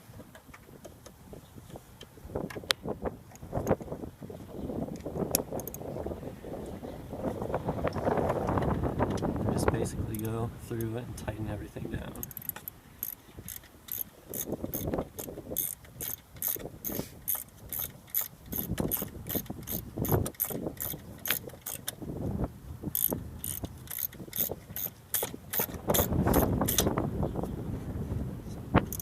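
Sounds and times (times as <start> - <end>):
ratchet wrench clicking: 12.2 - 22.0, 22.9 - 26.9.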